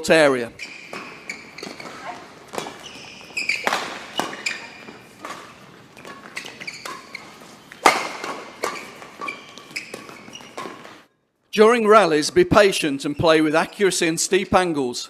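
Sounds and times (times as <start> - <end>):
shoes squeaking on floor: 0.0 - 11.1
racket hitting shuttlecock: 0.6 - 11.1.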